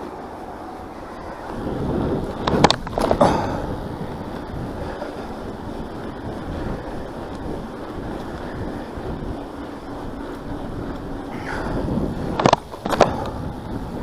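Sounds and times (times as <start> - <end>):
bike tyre and drivetrain rumble: 0.0 - 14.0
wind buffeting microphone: 0.0 - 14.0.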